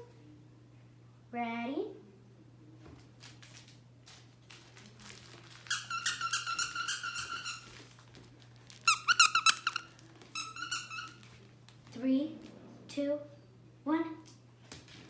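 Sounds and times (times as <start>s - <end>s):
dog toy squeaking: 5.7s - 7.8s, 8.8s - 11.2s.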